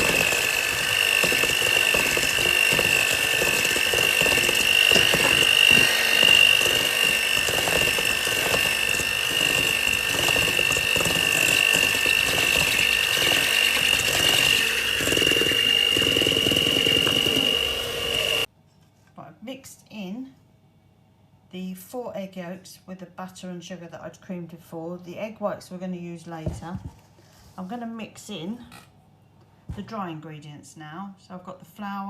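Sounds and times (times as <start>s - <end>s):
electric mixer whining: 0.0s - 18.5s.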